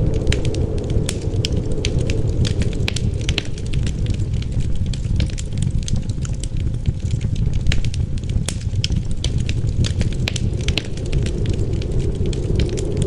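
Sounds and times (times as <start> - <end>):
fire pops and snaps: 0.0 - 13.0
low rumble: 0.0 - 13.0
wood fire crackling: 0.0 - 13.0.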